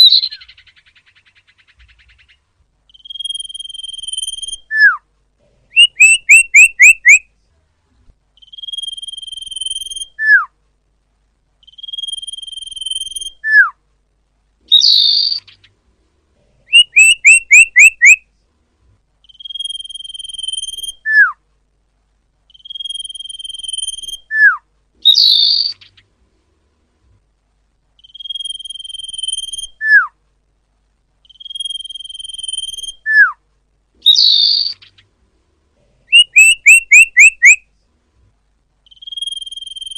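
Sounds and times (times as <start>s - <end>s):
recorded bird song: 0.0s - 10.7s, 11.4s - 21.5s, 22.3s - 26.8s, 27.8s - 38.0s, 38.6s - 39.9s.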